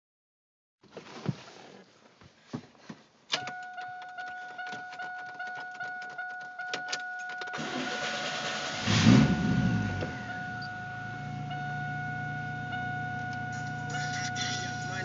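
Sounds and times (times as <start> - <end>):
electronic warning tone: 3.4 - 15.0.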